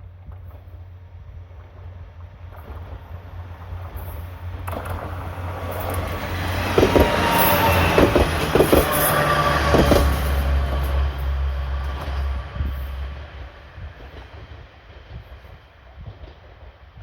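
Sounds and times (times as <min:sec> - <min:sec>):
diesel engine drone: 0:04.4 - 0:14.0
wheel clacks over rail joints: 0:04.6 - 0:12.3.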